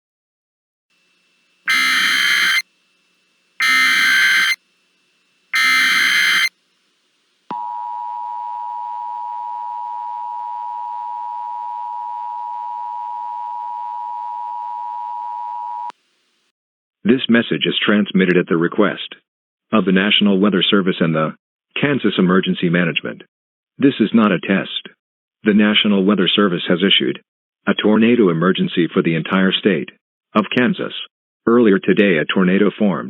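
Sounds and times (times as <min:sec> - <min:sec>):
two-tone attention signal: 0:01.7 - 0:02.6, 0:03.6 - 0:04.6, 0:05.5 - 0:06.5
digital data tone bursts: 0:01.7 - 0:02.7, 0:03.6 - 0:04.6, 0:05.5 - 0:06.5.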